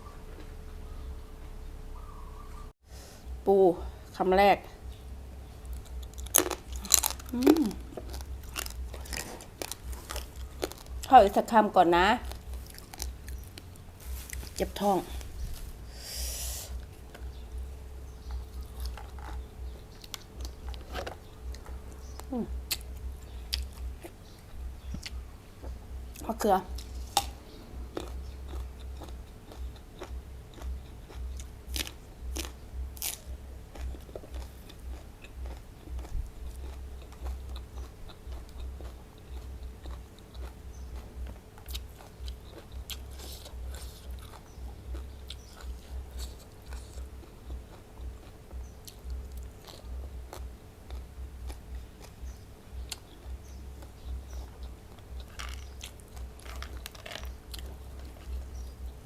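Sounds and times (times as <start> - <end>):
chewing food: 4.9 - 15.6, 16.7 - 59.0
crisp crunches: 5.6 - 11.2, 12.2 - 15.8, 54.0 - 58.9.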